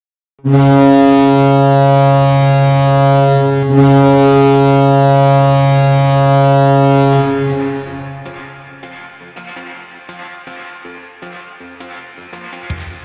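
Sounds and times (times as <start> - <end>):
low goal horn blowing: 0.4 - 8.8.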